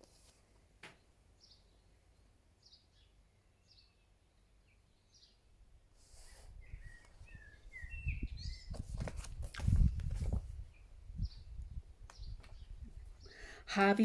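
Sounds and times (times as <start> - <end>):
rustle: 0.0 - 1.0, 5.9 - 13.0
small bird chirps: 1.4 - 5.5, 6.2 - 8.9, 10.6 - 13.4.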